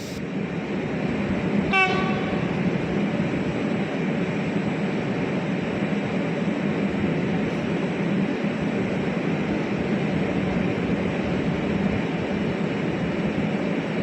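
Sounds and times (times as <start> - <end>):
train wheels rumbling on rails: 0.0 - 14.0
train horn blast: 1.7 - 2.5.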